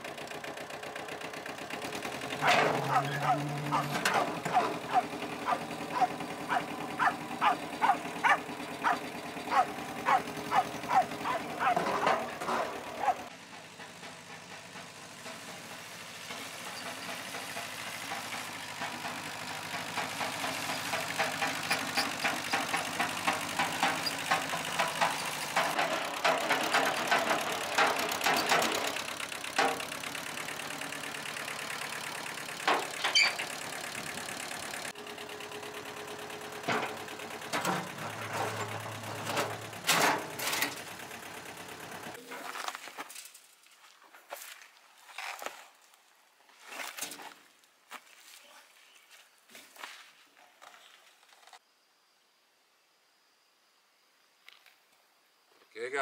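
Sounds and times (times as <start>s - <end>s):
engine running: 0.0s - 42.8s
dog barking: 2.4s - 11.8s, 13.0s - 13.3s.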